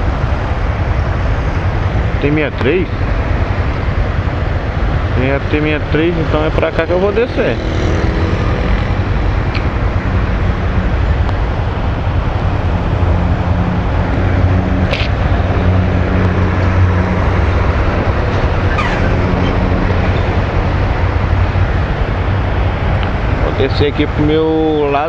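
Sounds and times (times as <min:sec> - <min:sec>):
riding noise: 0:00.0 - 0:25.0
motorcycle engine running: 0:06.9 - 0:23.4.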